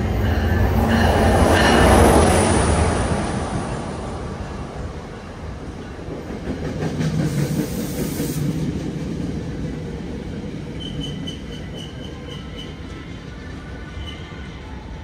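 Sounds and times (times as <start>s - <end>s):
train cars rolling on rails: 0.0s - 15.0s.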